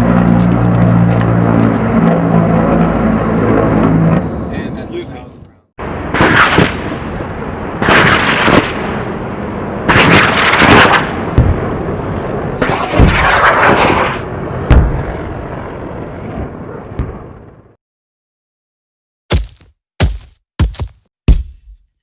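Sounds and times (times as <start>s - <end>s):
explosion blasts with rumbling tail: 5.8s - 17.7s
heavy gunshots: 6.0s - 7.1s, 7.8s - 9.0s, 9.9s - 11.7s, 12.6s - 15.2s.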